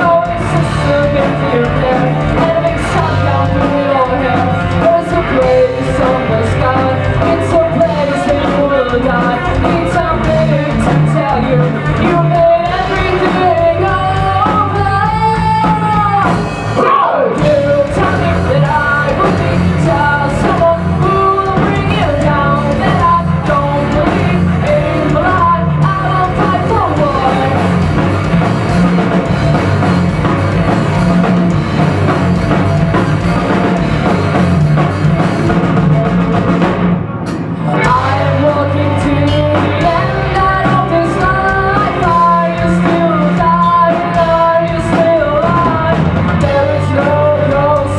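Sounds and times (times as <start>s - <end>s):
woman singing: 0.0s - 28.0s, 37.7s - 47.9s
rock band playing: 0.0s - 47.9s.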